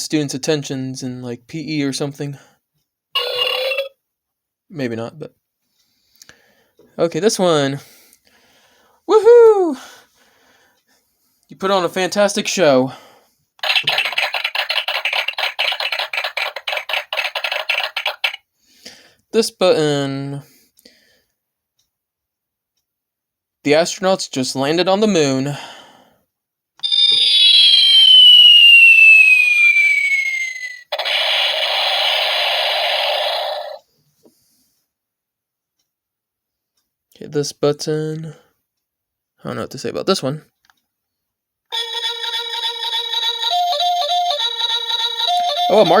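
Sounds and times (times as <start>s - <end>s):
falling whistle: 26.8s - 33.8s.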